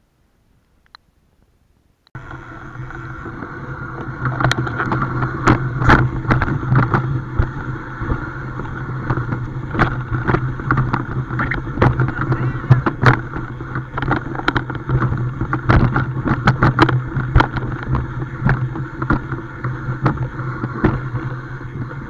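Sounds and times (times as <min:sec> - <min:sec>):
boat engine running: 0:02.2 - 0:22.0
wind buffeting microphone: 0:02.2 - 0:22.0
scattered knocks: 0:09.0 - 0:19.4.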